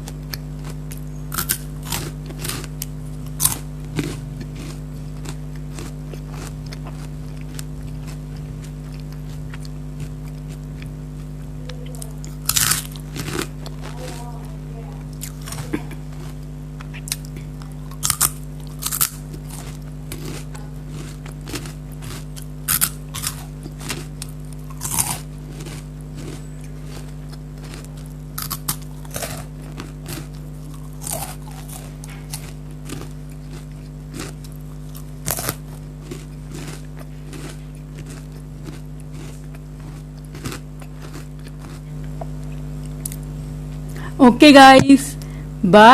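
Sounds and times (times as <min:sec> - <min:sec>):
snacks being crunched and chewed: 0:00.0 - 0:43.8
steady low hum: 0:00.0 - 0:45.9.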